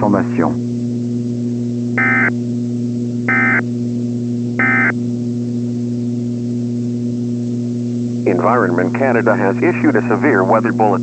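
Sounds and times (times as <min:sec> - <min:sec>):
steady low hum: 0:00.0 - 0:11.0
short electronic beeps: 0:02.0 - 0:02.3, 0:03.3 - 0:03.6, 0:04.6 - 0:04.9.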